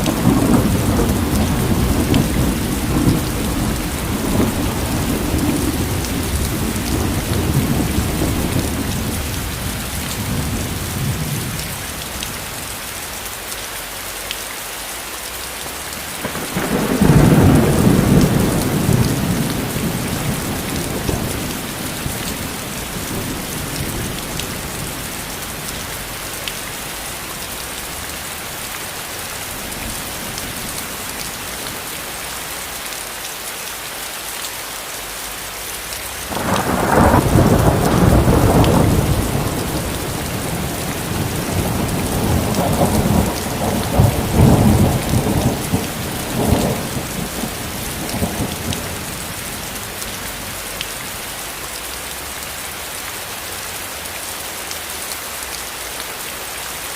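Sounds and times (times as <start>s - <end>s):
thunder rolling: 0.0s - 11.8s, 16.1s - 28.0s, 36.3s - 50.8s
steady rain falling: 0.0s - 56.9s.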